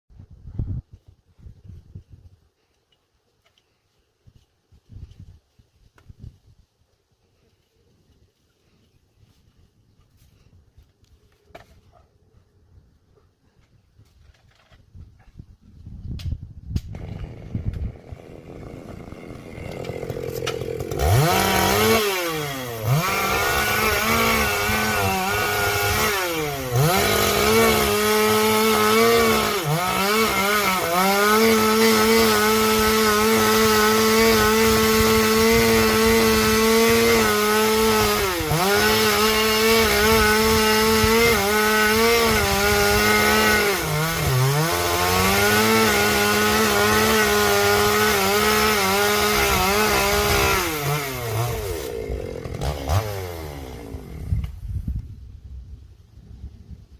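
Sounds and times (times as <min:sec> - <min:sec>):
chainsaw cutting wood: 0:16.7 - 0:54.7.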